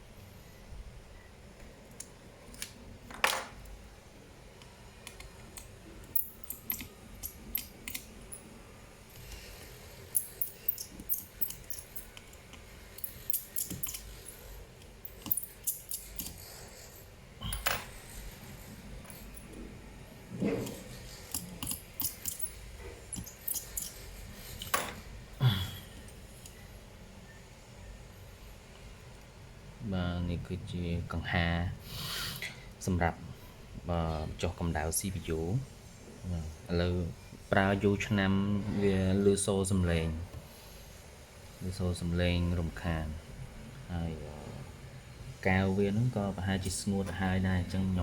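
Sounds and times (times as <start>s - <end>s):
small tools clicking and tapping: 4.6s - 8.4s, 10.1s - 16.5s, 20.4s - 24.0s.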